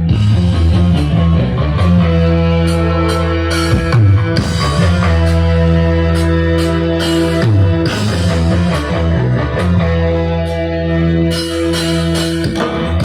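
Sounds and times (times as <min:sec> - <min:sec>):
drums: 0:00.0 - 0:13.0
electric guitar: 0:00.0 - 0:13.0
sustained bass notes: 0:00.0 - 0:13.0.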